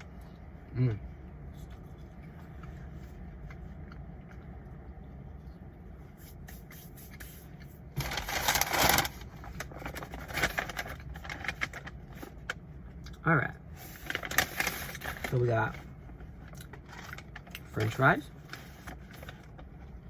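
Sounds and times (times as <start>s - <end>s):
steady low hum: 0.0s - 20.0s
paper bag crinkling: 8.0s - 12.5s, 13.8s - 15.8s, 16.7s - 19.7s.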